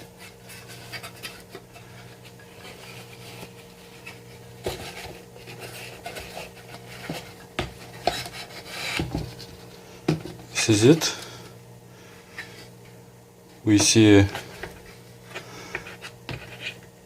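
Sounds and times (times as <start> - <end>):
packaging rustling and scraping: 0.0 - 9.8, 14.1 - 17.0
faint steady hum: 0.0 - 17.0.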